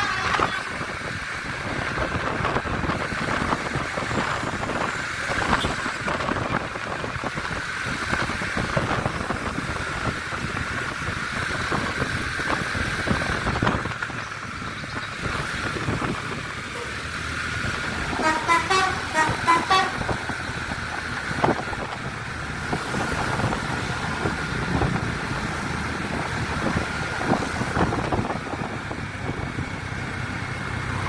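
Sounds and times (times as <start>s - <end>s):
road traffic: 0.0s - 31.0s
vehicle engines running: 0.0s - 31.0s.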